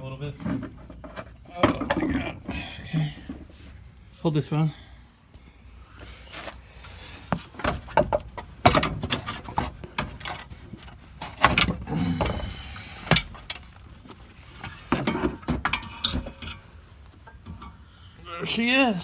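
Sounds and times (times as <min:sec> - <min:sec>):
metal clanks and rattles: 0:00.3 - 0:03.6, 0:07.6 - 0:18.0.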